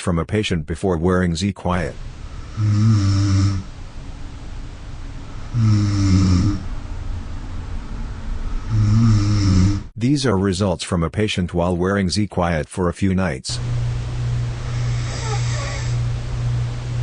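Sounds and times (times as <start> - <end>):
faint hiss: 1.8 - 10.0
person snoring: 2.4 - 3.7, 5.5 - 6.7, 8.6 - 9.9, 14.6 - 16.1.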